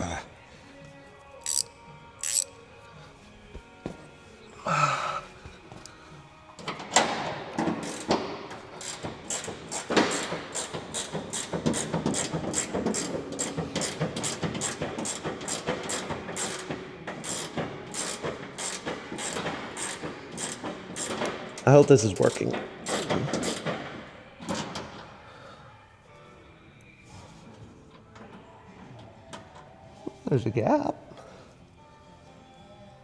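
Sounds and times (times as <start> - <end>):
ratchet wrench clicking: 1.4 - 2.5, 7.8 - 21.4, 22.2 - 23.7.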